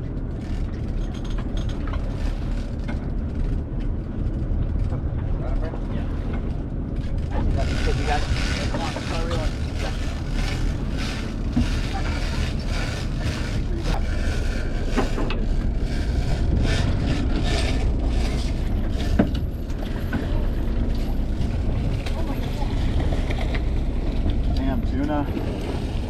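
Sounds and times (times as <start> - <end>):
boat engine running: 0.0 - 26.0
fishing reel clicking: 7.6 - 15.0.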